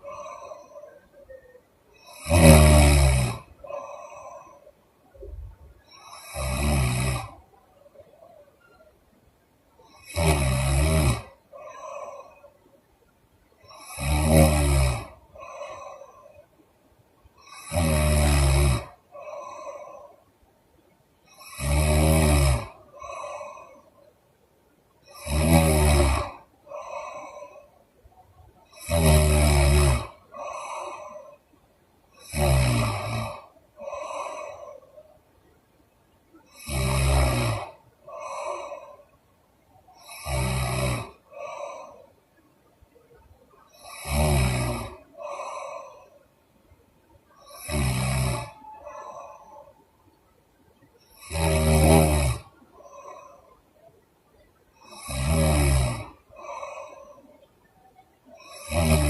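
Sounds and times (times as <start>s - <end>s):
woman snoring: 0.0s - 4.7s, 5.9s - 7.4s, 9.9s - 12.6s, 13.7s - 16.4s, 17.4s - 20.2s, 21.3s - 24.0s, 25.1s - 27.7s, 28.7s - 31.4s, 32.2s - 35.0s, 36.5s - 39.1s, 40.0s - 42.1s, 43.7s - 46.2s, 47.4s - 49.8s, 51.1s - 53.5s, 54.8s - 57.3s, 58.3s - 59.0s.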